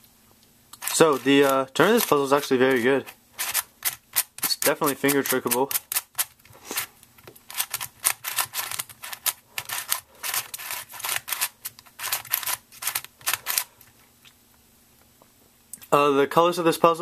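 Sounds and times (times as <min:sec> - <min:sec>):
puzzle cube clacking turns: 0:00.8 - 0:02.4, 0:03.0 - 0:13.7.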